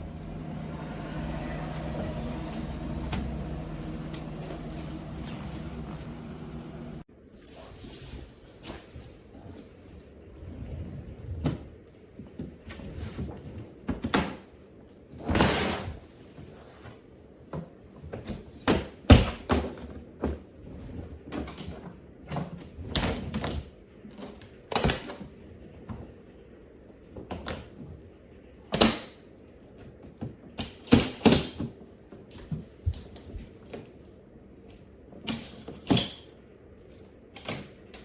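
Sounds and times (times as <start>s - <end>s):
suitcase scraping: 0.0s - 7.0s.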